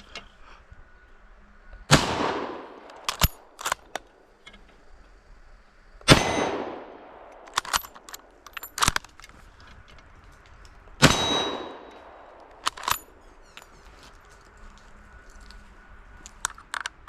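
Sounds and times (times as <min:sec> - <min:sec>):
rifle shots with echo: 0:01.9 - 0:03.9, 0:06.0 - 0:08.0, 0:11.0 - 0:13.1
sharp metallic clanks: 0:11.0 - 0:13.8.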